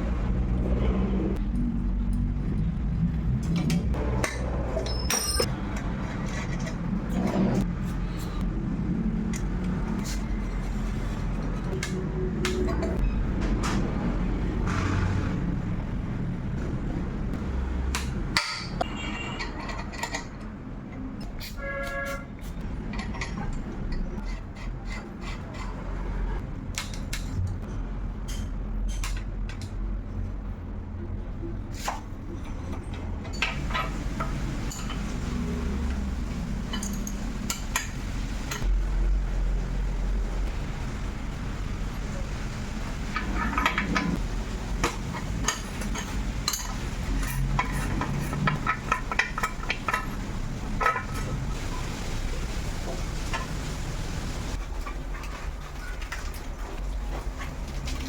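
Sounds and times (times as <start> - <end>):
steady low rumble: 0.0 - 4.7
metal tools clicking and knocking: 3.6 - 6.8, 18.0 - 21.5, 22.8 - 24.1, 44.8 - 50.2
metallic clinks of tools: 4.8 - 5.5.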